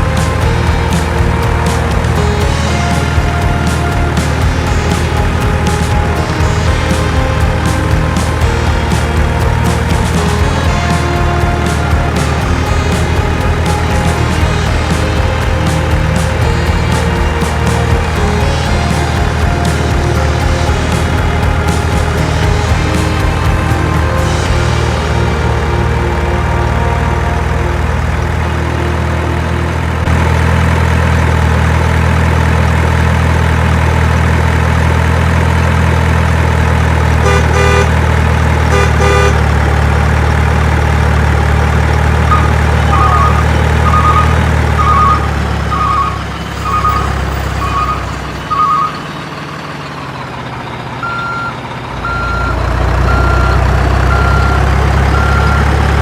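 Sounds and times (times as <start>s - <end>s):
truck engine running: 0.0s - 56.0s
high-pitched beeping: 41.9s - 56.0s
reversing alarm beeping: 41.9s - 56.0s.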